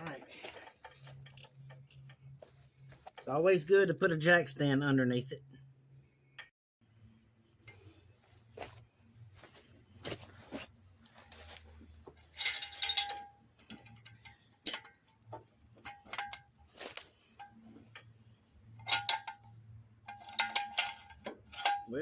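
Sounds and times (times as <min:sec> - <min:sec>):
metal jack stand clanking: 0:12.1 - 0:22.0.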